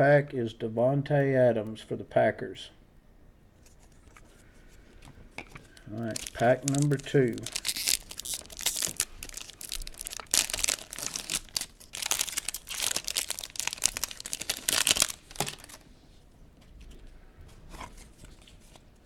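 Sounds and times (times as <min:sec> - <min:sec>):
card wrapper crinkling and tearing: 0:05.7 - 0:15.8.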